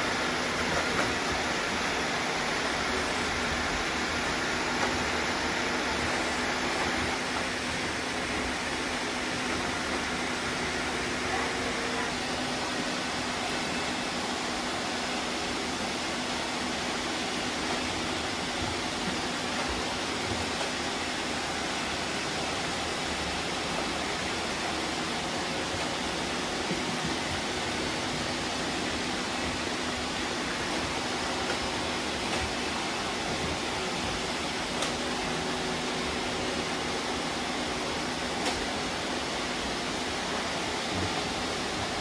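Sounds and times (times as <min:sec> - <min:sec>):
robot vacuums running: 0:00.0 - 0:42.0.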